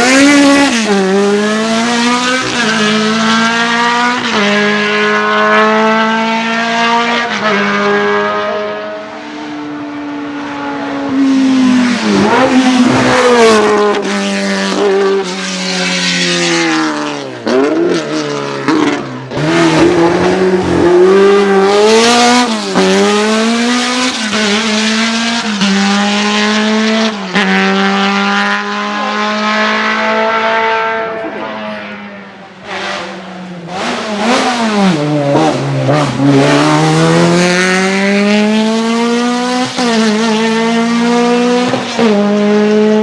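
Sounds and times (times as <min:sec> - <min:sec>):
racing car engine at full throttle: 0:00.0 - 0:43.0.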